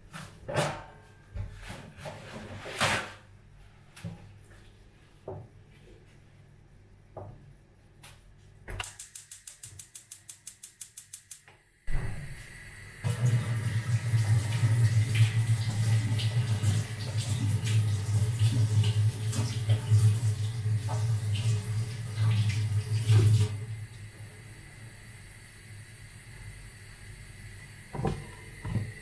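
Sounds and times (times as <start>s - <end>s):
kitchen knocks and clatters: 0.1s - 3.2s
fast run of clicks: 8.8s - 11.5s
water running from a tap: 13.0s - 24.1s.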